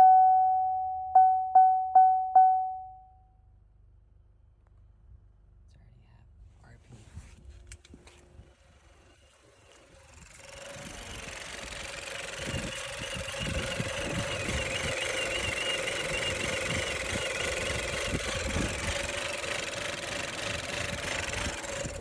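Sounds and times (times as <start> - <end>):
car engine running: 6.5 - 22.0
steady engine whistle: 12.4 - 22.0.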